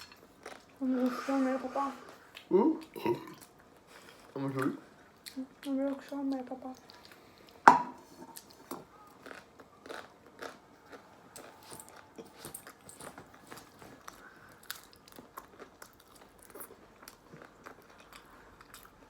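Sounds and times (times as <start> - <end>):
person chewing: 0.0 - 0.8, 2.1 - 5.7, 6.8 - 19.0.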